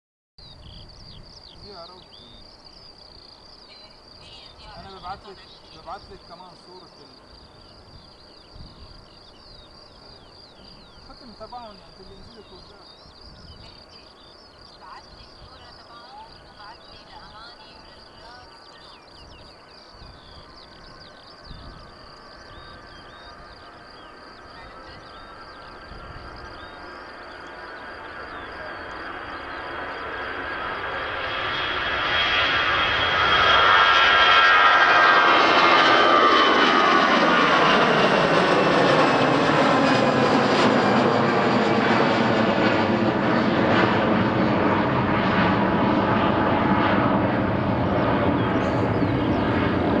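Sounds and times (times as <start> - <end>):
high chirping calls: 0.4 - 30.7, 47.5 - 50.0
jet engines on takeoff: 0.6 - 50.0.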